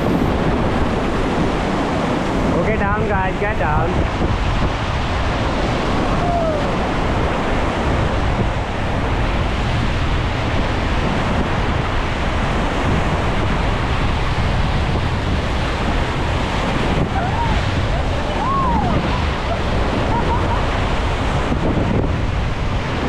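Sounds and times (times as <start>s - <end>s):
river rapids rushing: 0.0s - 23.0s
wind buffeting microphone: 0.0s - 23.0s.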